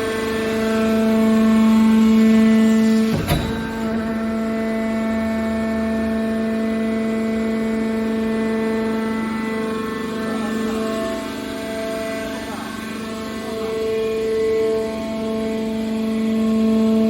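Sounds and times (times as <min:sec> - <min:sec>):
hydraulic power unit humming: 0:00.0 - 0:17.0
sharp knock: 0:03.1 - 0:04.6.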